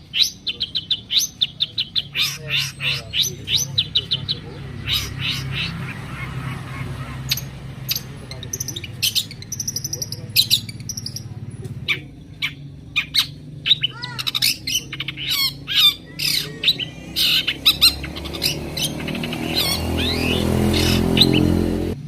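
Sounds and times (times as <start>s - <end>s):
shrike chattering song: 0.0s - 22.0s.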